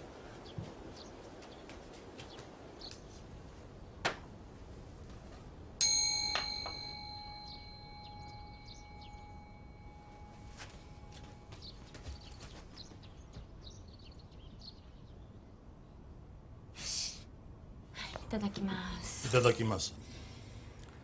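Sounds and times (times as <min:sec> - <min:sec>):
small metal bell ringing: 0:05.8 - 0:11.5
faint bird chirps: 0:06.9 - 0:15.6.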